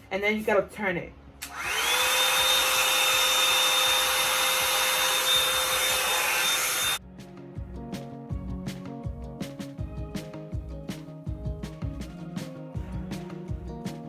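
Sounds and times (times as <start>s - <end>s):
hot air brush motor whining: 1.4s - 7.0s.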